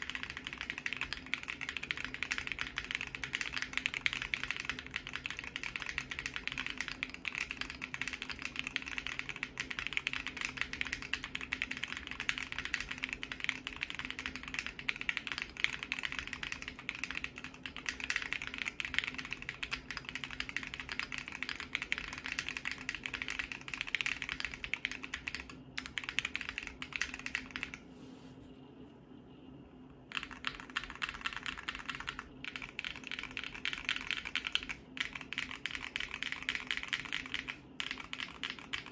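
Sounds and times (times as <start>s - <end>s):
fast mechanical keyboard typing: 0.0s - 27.8s, 30.1s - 38.9s.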